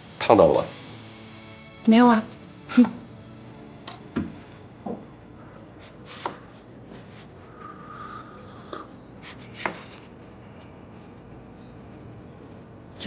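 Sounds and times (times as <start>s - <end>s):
knife cutting on cutting board: 5.8s - 7.3s, 9.2s - 10.1s.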